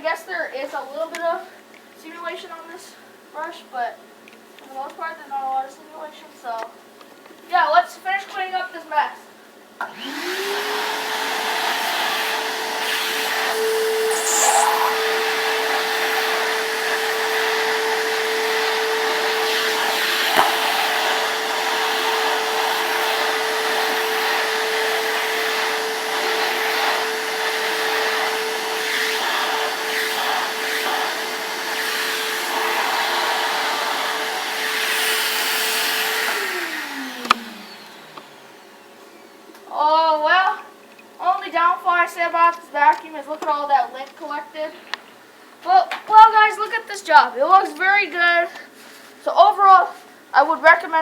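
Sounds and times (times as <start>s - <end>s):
shop vacuum motor whine: 9.8s - 39.7s.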